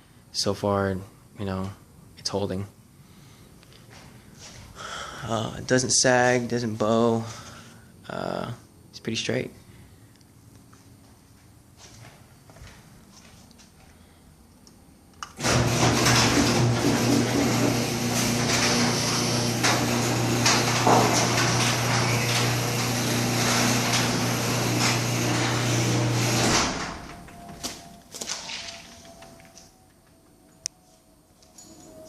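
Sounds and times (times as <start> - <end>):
garage door opener motor hum: 15.4 - 28.0.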